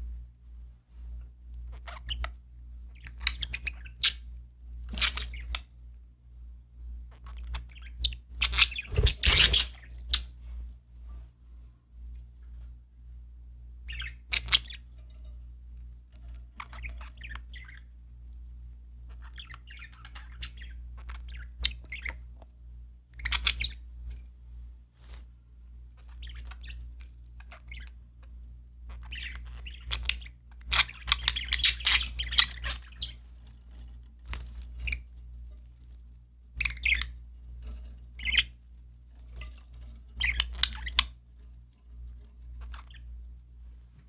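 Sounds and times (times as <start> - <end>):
budgerigars chirping and warbling: 3.0 - 4.3, 7.5 - 10.2, 13.9 - 14.8, 16.7 - 17.9, 19.1 - 22.2, 28.9 - 33.2, 36.6 - 37.2, 38.2 - 38.6, 40.2 - 41.1, 42.6 - 43.2.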